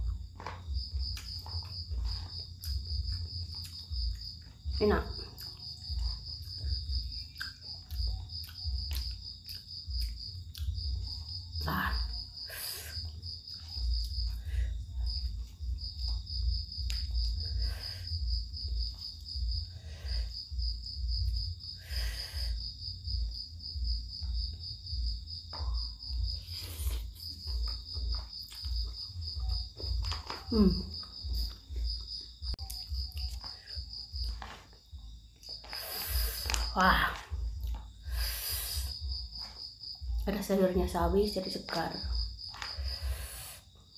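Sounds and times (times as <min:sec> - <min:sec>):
chewing: 0:00.0 - 0:04.6, 0:05.3 - 0:11.3, 0:26.4 - 0:34.8, 0:35.4 - 0:38.0.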